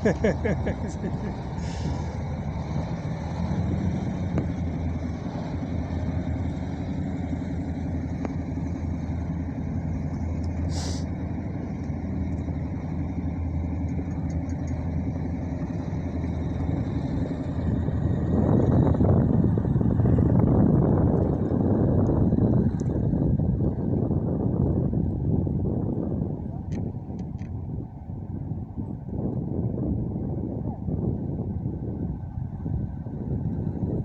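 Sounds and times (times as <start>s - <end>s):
vehicle engine running: 0.0s - 34.0s
brief hiss: 10.7s - 11.1s.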